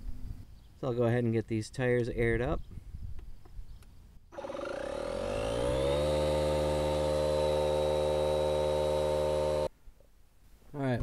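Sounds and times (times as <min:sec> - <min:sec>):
air compressor running: 0:04.3 - 0:09.7.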